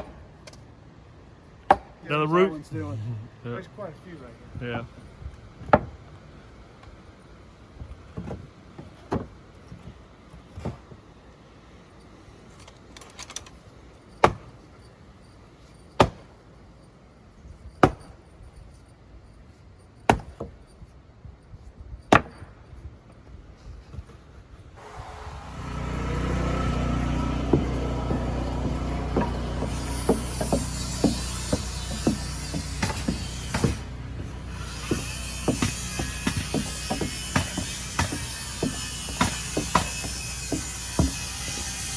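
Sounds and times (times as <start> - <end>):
engine running: 24.8 - 41.9
hammer driving stakes into ground: 24.8 - 41.9.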